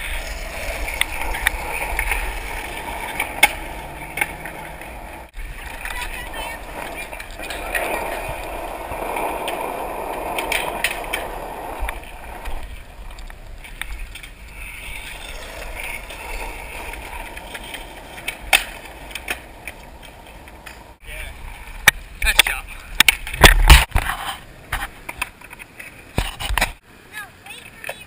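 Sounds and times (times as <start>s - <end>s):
skateboard clacks: 0.0s - 21.0s, 21.8s - 26.8s
skateboard wheels rolling: 0.0s - 26.8s.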